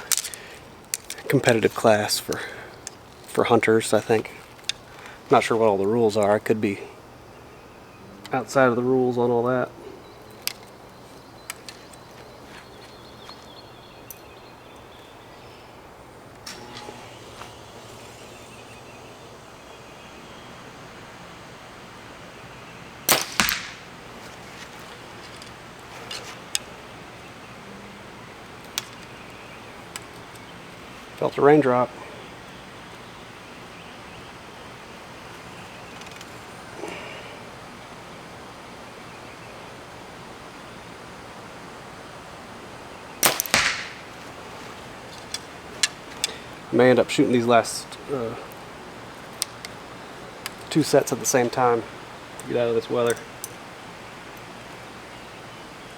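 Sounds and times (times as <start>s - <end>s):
arrow hitting target: 23.1s - 23.9s, 43.2s - 44.1s
bow string snap: 23.1s - 23.9s, 43.2s - 44.0s
bow string crack: 23.1s - 26.7s, 43.2s - 44.3s.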